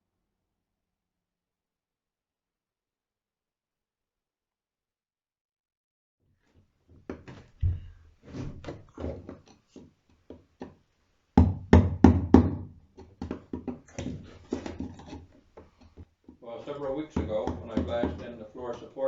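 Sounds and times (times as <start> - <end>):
knocking and thumping: 6.9 - 10.8, 11.4 - 18.9.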